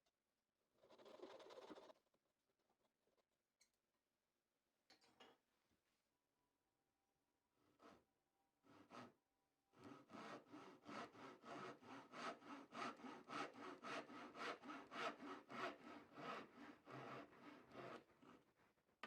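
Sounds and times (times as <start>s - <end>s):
hand saw cutting wood: 7.7s - 8.0s, 8.6s - 9.2s, 9.8s - 19.0s.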